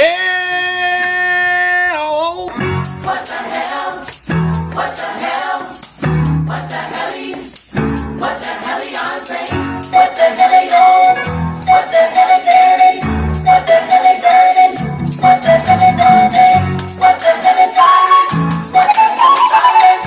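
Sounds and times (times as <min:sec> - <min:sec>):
fast rattling percussion: 0:02.8 - 0:20.0
choir singing: 0:03.0 - 0:04.1, 0:04.8 - 0:05.8, 0:06.4 - 0:07.5, 0:08.2 - 0:20.0
high melody line: 0:09.9 - 0:20.0.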